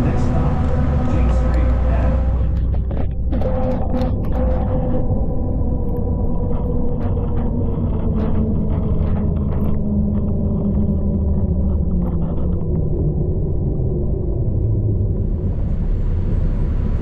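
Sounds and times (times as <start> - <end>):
bus body rattles and creaks: 0.0 - 5.2
bus engine rumble with whine: 0.0 - 17.0.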